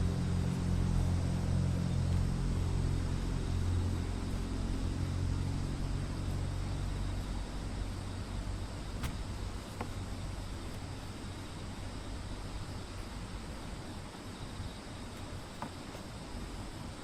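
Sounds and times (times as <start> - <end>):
motor engine humming: 7.7 - 11.2.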